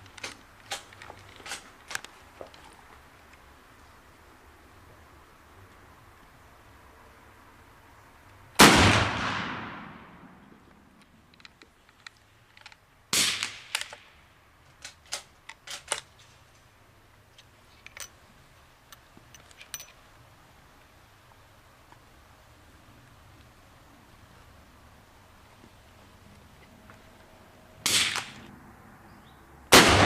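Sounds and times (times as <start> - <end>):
rifle action clicks and clanks: 0.0 - 2.7, 11.0 - 14.0, 14.6 - 16.4, 17.4 - 18.2, 18.9 - 20.0
rifle shot echoing: 8.6 - 10.6, 13.1 - 14.0, 27.8 - 28.5, 29.7 - 30.0.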